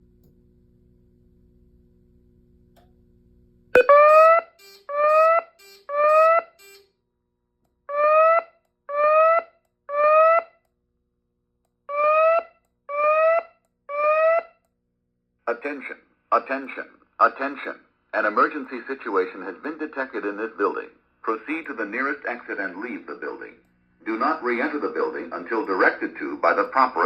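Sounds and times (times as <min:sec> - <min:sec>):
low electrical hum: 0:00.0 - 0:03.8, 0:14.6 - 0:27.0
fire alarm whoop tones: 0:03.8 - 0:06.9, 0:07.9 - 0:10.6, 0:11.9 - 0:14.6.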